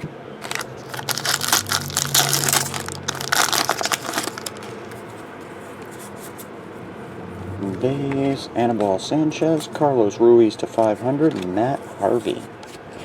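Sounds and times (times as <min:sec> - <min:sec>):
wrapper crinkling and tearing: 0:00.4 - 0:04.8.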